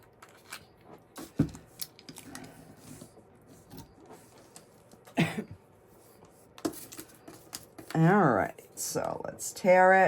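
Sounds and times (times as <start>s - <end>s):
person coughing: 5.1s - 5.6s.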